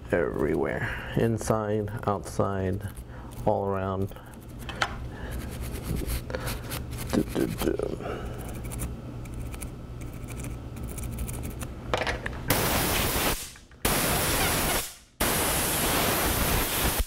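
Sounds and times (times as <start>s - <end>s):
air jet hissing: 12.5s - 17.0s.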